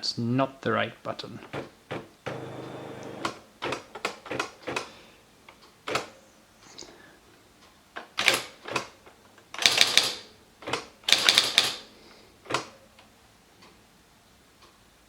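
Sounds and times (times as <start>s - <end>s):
electric typewriter typing: 2.3s - 3.4s, 9.6s - 10.2s, 11.1s - 11.8s.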